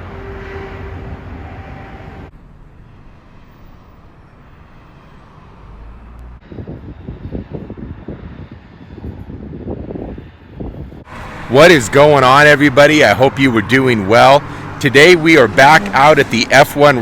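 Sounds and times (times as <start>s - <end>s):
vehicle engine running: 11.1s - 17.0s.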